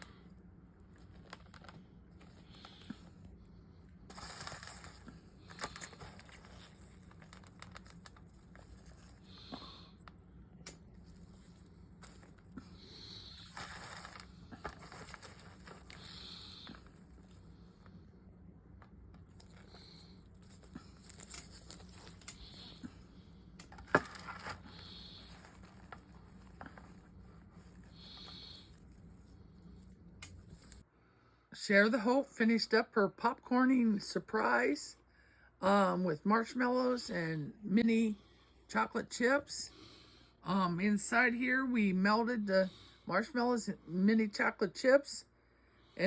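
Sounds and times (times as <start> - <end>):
handling clicks and rustling: 0.8 - 3.3, 4.1 - 18.0, 18.7 - 30.8.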